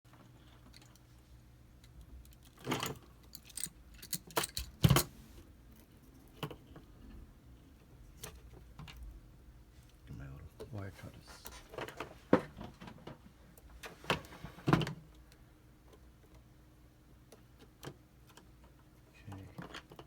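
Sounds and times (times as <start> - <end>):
clicks and rattles of tools handled: 1.8 - 5.1.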